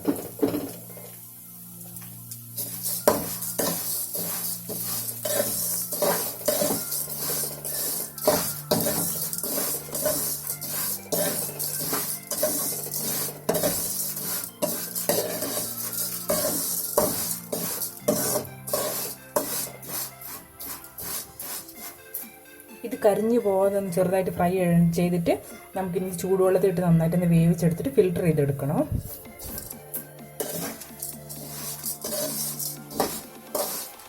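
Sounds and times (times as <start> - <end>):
noodles sizzling in oil: 0.0 - 23.6, 29.1 - 34.0
spatula scraping pan: 2.6 - 22.4, 29.1 - 34.0.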